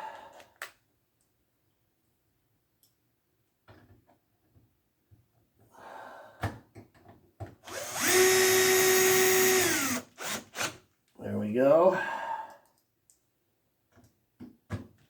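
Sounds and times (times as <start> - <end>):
power drill motor whining: 7.6 - 10.8.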